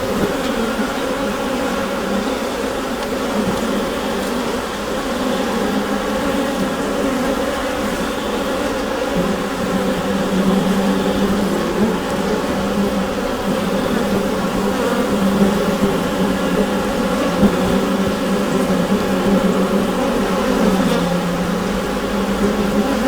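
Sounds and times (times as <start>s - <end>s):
honeybees buzzing in a hive: 0.0s - 23.0s.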